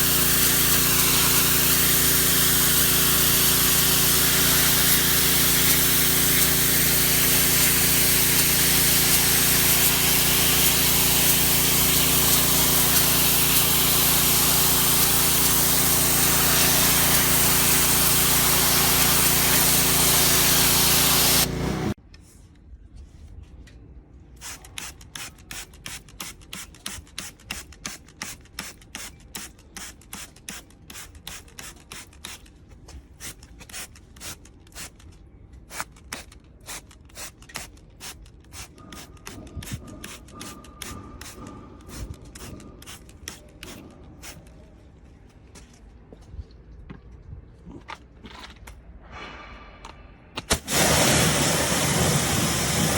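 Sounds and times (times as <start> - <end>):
pressure washer spray hiss: 0.0 - 22.0, 50.6 - 52.9
pump hum: 0.0 - 22.0.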